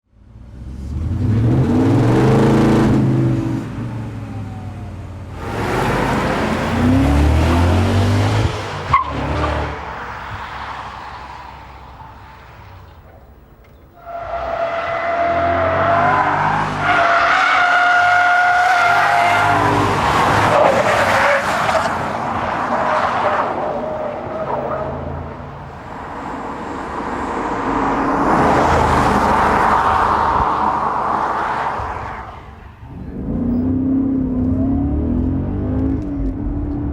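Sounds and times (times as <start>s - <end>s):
car engine under load: 0.2s - 36.9s
tyres squealing: 8.6s - 25.8s.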